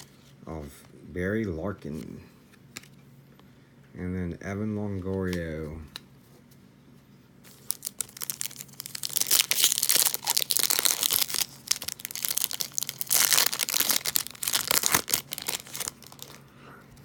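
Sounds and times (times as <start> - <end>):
wrapper tearing and crinkling: 7.5 - 16.4.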